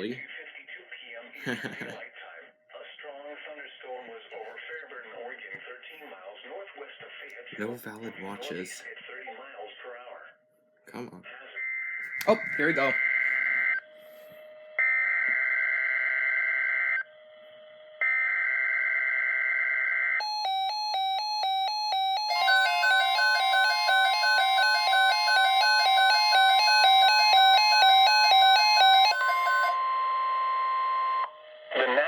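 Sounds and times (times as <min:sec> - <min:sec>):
steady warning alarm tone: 0:11.6 - 0:31.7
rapid alternating alert beeps: 0:20.2 - 0:31.3.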